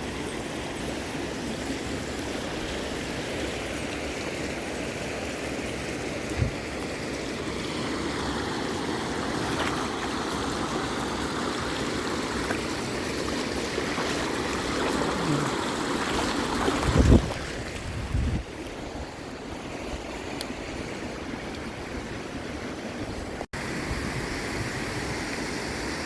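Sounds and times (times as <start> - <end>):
waterfall rushing: 1.8 - 17.2.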